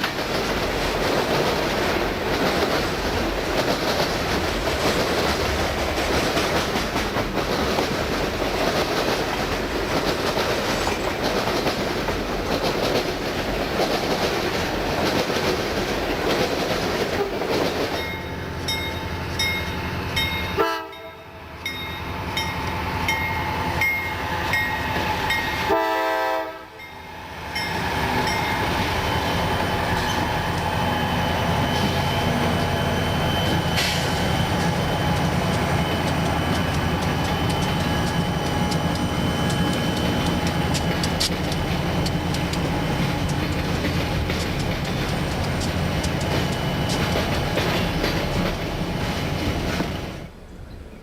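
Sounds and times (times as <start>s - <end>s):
train wheels rumbling and clattering: 0.0s - 21.0s, 21.6s - 25.8s, 27.3s - 50.4s
crossing bell dinging: 17.9s - 25.8s, 26.7s - 30.2s
locomotive air horn: 20.6s - 21.4s, 25.6s - 26.8s.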